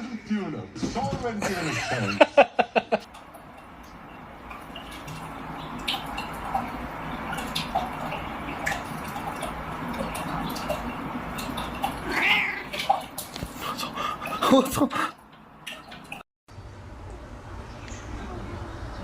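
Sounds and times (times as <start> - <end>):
running water: 3.0 - 16.2
water dripping and splashing: 3.0 - 16.2.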